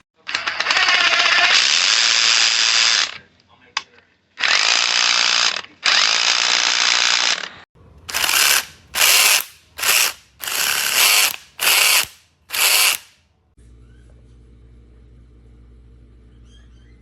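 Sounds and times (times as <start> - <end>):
impact wrench hammering: 8.1 - 13.1.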